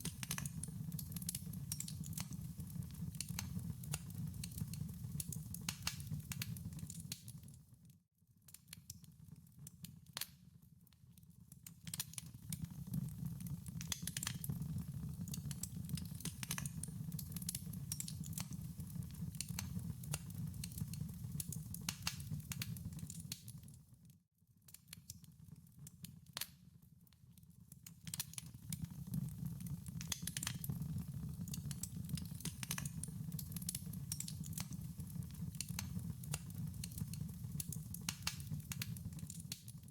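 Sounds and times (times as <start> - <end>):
low rumble of burning: 0.0 - 6.9, 12.4 - 23.4, 28.6 - 39.9
fire crackling and popping: 0.0 - 7.6, 11.5 - 23.8, 27.7 - 39.9.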